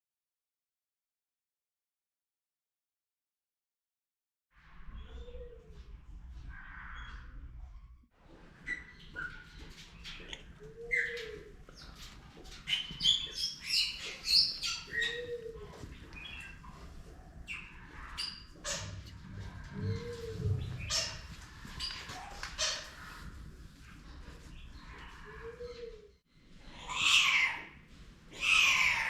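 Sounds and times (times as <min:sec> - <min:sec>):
birds chirping: 0:08.6 - 0:26.2
low rounded bird call: 0:17.5 - 0:23.4.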